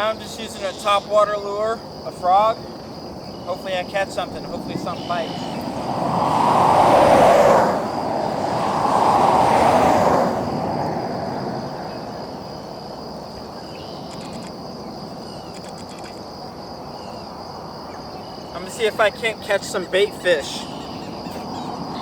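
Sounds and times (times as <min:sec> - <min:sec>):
distant traffic hum: 0:00.0 - 0:22.0
vehicles passing: 0:03.5 - 0:13.4.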